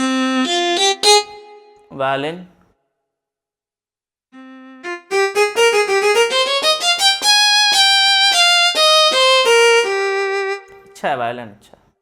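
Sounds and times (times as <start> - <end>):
keyboard violin melody: 0.0 - 1.9, 4.4 - 11.0.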